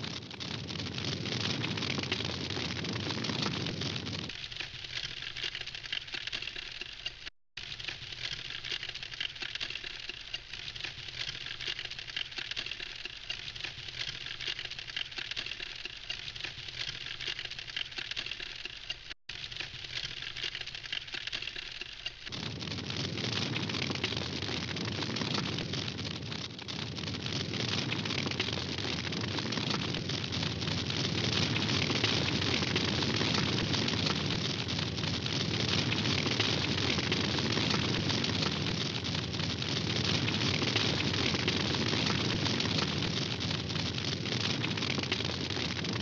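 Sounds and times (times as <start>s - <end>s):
campfire crackling: 0.0s - 46.0s.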